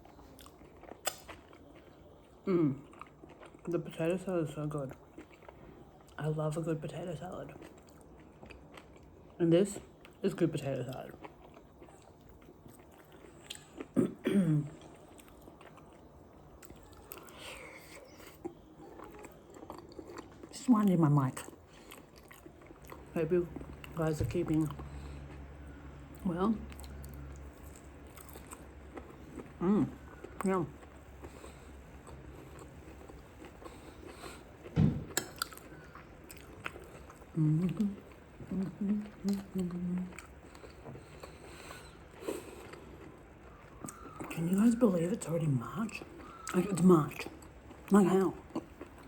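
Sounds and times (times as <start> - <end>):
person chewing: 0.0 - 3.7, 4.9 - 6.2, 7.5 - 10.2, 10.9 - 20.5, 21.4 - 44.6, 45.9 - 49.0
short low thud: 34.8 - 35.2.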